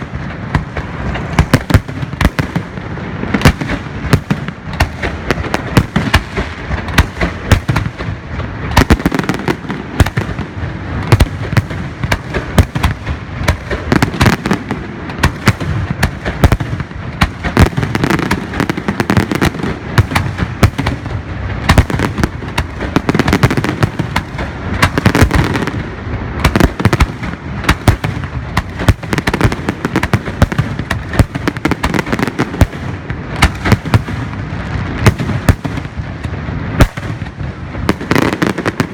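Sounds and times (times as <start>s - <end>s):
fireworks bangs: 0.0s - 38.9s.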